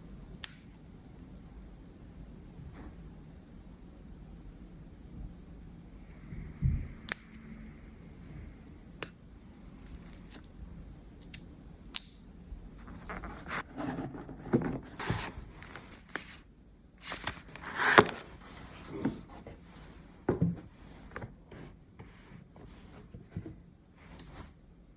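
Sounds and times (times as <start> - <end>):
short scraping and rustling: 12.8 - 16.4, 17.0 - 24.6.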